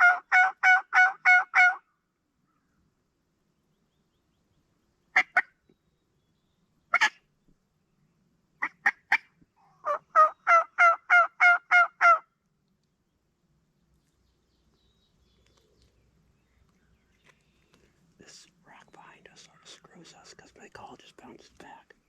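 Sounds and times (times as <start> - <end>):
turkey clucking: 0.0 - 1.8, 9.8 - 12.2
turkey yelps: 0.0 - 1.8, 6.9 - 7.2, 8.6 - 12.2.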